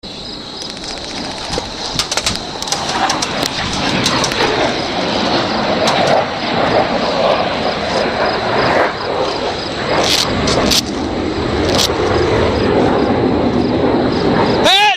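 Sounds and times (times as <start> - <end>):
jet aircraft roar overhead: 0.0 - 14.9
sharp clicks and rustles: 0.6 - 6.3, 9.3 - 11.0, 11.6 - 12.0.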